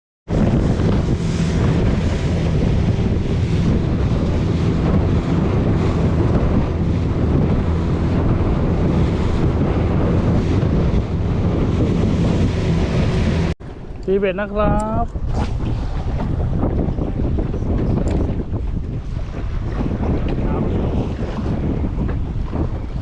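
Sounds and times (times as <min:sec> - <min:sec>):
boat engine hum: 0:00.3 - 0:23.0
waves washing: 0:00.3 - 0:23.0
wind buffeting microphone: 0:00.3 - 0:23.0.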